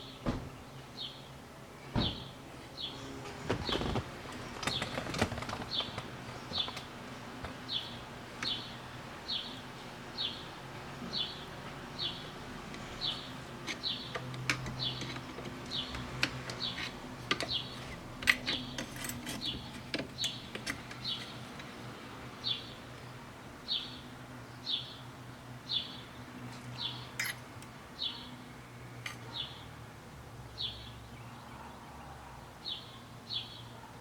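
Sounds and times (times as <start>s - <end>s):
bird chirping: 7.6s - 10.5s, 11.1s - 25.1s, 25.7s - 27.4s, 28.0s - 29.8s.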